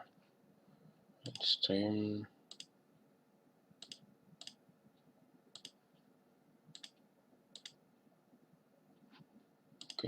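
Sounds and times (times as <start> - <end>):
computer mouse button clicking: 5.5 - 5.8.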